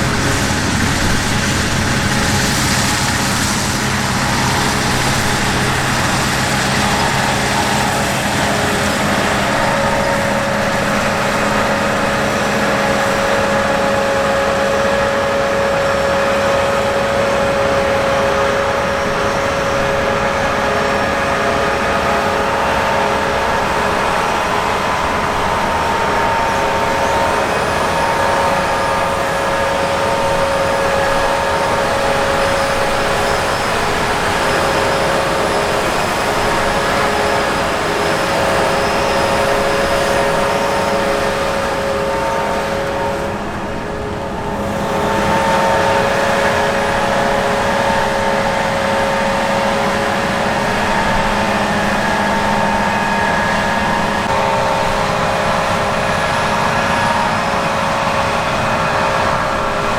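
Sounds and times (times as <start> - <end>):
harvest machinery engine rumble: 0.0 - 59.9
machinery whining tones: 0.0 - 59.9.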